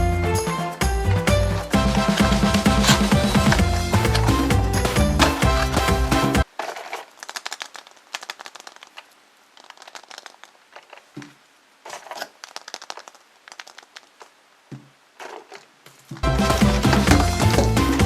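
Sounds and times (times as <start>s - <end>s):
loud music: 0.0s - 6.4s, 16.2s - 18.0s
foil wrapper crinkling: 1.6s - 11.2s, 11.8s - 14.3s.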